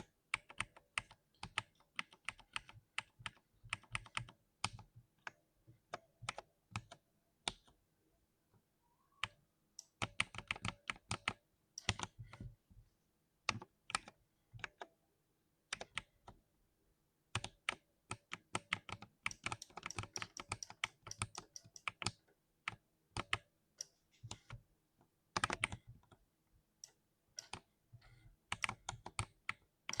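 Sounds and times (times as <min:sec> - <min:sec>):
sharp keyboard keystrokes: 0:18.6 - 0:22.1.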